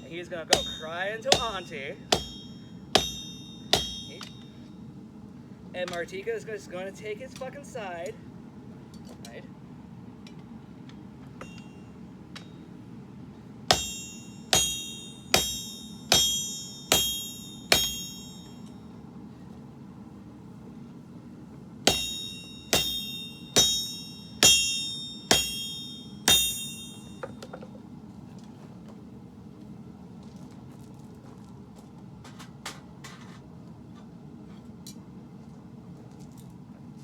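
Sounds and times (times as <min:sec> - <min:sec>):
hammer striking steel on anvil: 0:00.5 - 0:04.7, 0:11.4 - 0:12.6, 0:13.7 - 0:18.8, 0:21.9 - 0:27.6.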